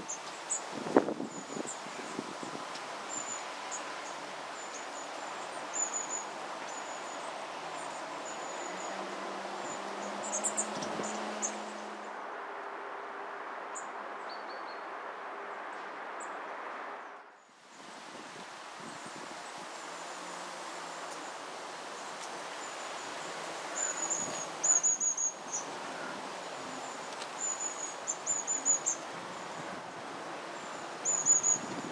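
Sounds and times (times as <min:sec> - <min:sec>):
rustling background hiss: 0:00.0 - 0:14.2, 0:14.8 - 0:31.9
birds calling high thin notes: 0:03.1 - 0:12.1.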